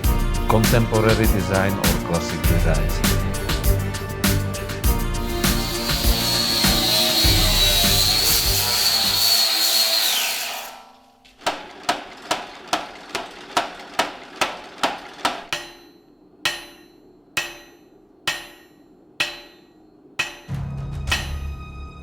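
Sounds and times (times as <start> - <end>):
hammer striking metal on anvil: 10.7 - 21.7.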